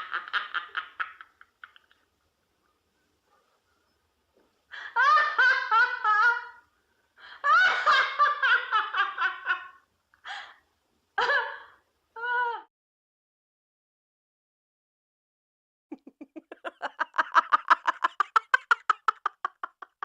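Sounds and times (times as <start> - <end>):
woman laughing: 4.8 - 6.6, 11.2 - 12.7, 15.9 - 20.0.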